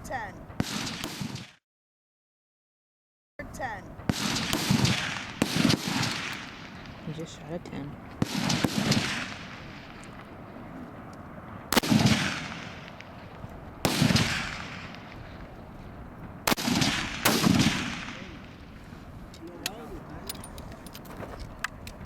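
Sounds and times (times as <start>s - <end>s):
rifle shots with echo: 0.5s - 1.6s, 3.9s - 10.6s, 11.6s - 15.8s, 16.4s - 18.9s.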